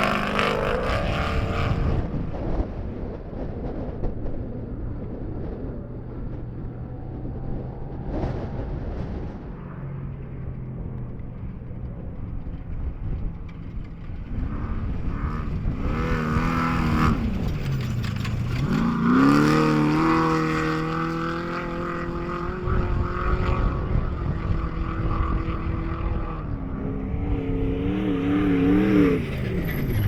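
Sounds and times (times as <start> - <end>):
race vehicle engine revving: 0.0 - 2.4, 13.4 - 30.0.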